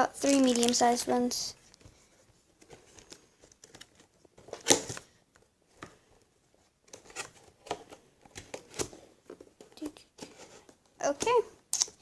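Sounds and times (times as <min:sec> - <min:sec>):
cardboard and toys rustling: 0:00.0 - 0:05.8, 0:06.5 - 0:11.5.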